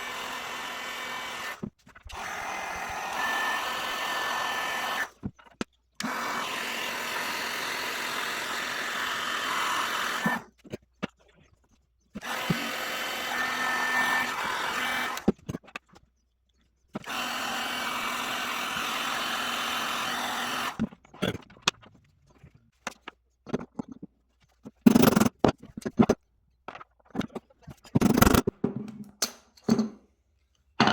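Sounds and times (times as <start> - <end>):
small power tool running: 0.0 - 5.2, 6.0 - 10.4, 12.2 - 15.3, 17.0 - 20.8.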